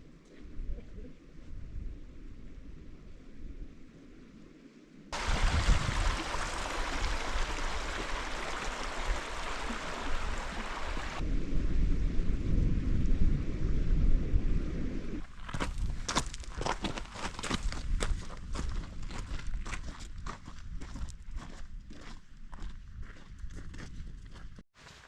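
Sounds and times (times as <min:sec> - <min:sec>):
steady rushing hiss: 0:05.2 - 0:11.2
wind buffeting microphone: 0:05.2 - 0:24.6.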